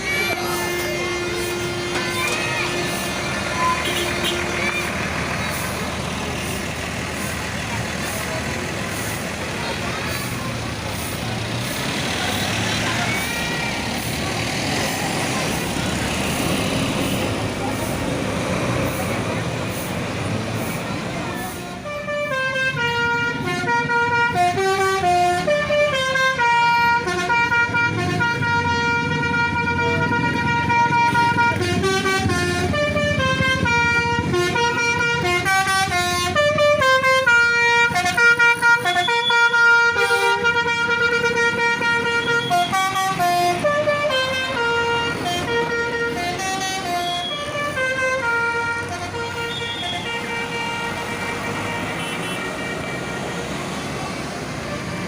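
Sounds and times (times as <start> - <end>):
multi-tone air horn melody: 0.0 - 4.8, 21.4 - 53.7
bus engine running: 0.0 - 55.0.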